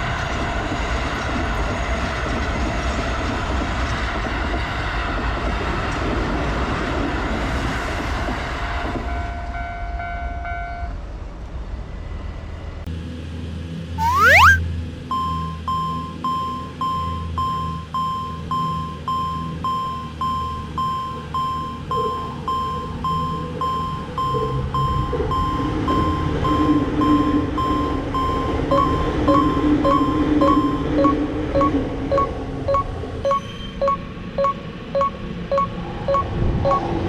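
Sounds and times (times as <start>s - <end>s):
railroad crossing alarm bell: 8.6s - 11.1s, 15.1s - 36.9s.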